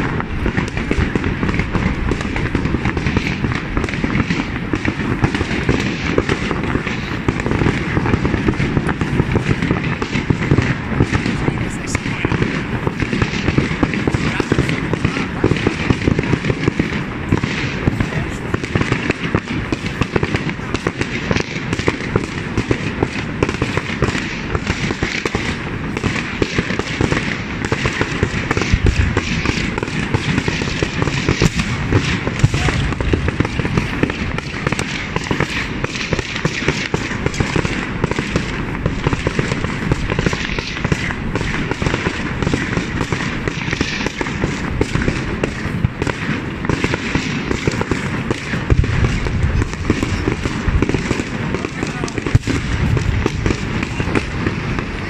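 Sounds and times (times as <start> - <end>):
people's voices: 0.0 - 24.0, 24.6 - 42.7, 47.6 - 55.0
fireworks bangs: 0.0 - 55.0.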